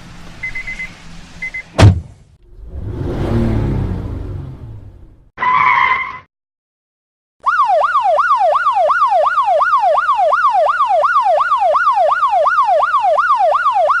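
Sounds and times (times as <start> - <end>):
electronic siren yelping: 7.4 - 14.0.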